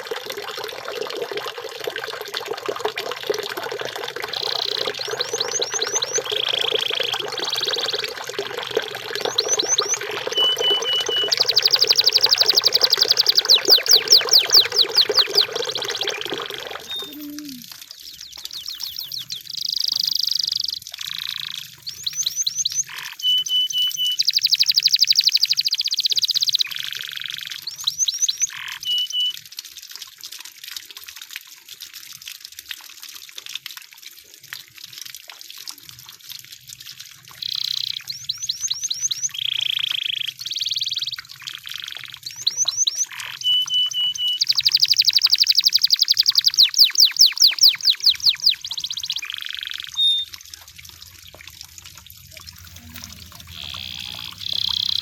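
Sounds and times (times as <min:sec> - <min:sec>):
canary singing: 0:04.3 - 0:08.1, 0:09.2 - 0:20.4, 0:41.7 - 0:50.3, 0:52.4 - 0:55.0.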